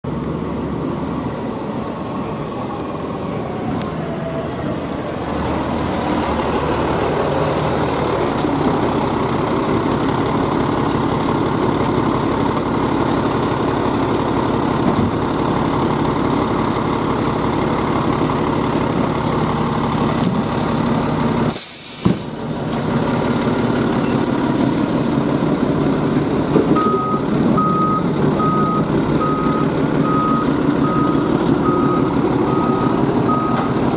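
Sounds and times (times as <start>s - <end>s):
diesel engine running: 0.1s - 33.9s
air brakes hissing: 21.5s - 22.5s
reversing alarm beeping: 26.8s - 33.8s.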